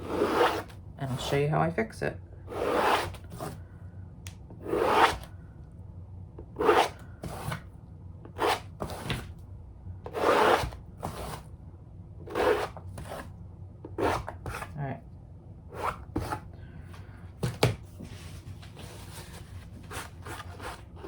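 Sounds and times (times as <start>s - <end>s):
palette knife scraping paint: 0.0s - 1.3s, 2.5s - 3.6s, 4.6s - 5.3s, 6.6s - 7.6s, 8.4s - 9.2s, 10.1s - 11.4s, 12.3s - 13.3s.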